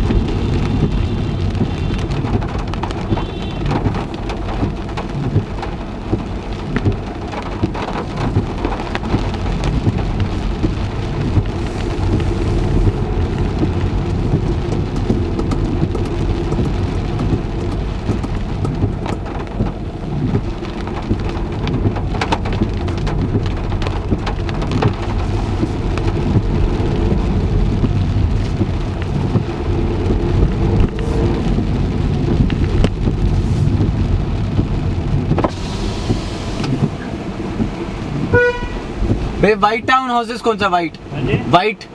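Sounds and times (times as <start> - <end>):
heavy rain on car roof: 0.0 - 41.9.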